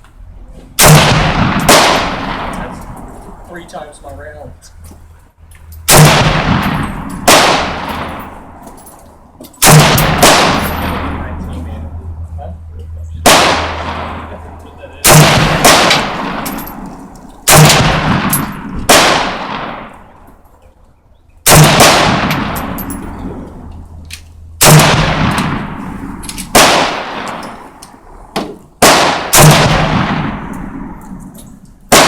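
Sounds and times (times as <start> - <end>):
rifle shots echoing: 0.8 - 3.1, 5.9 - 8.6, 9.6 - 11.5, 13.2 - 20.2, 21.4 - 23.7, 24.6 - 27.8, 28.8 - 32.0.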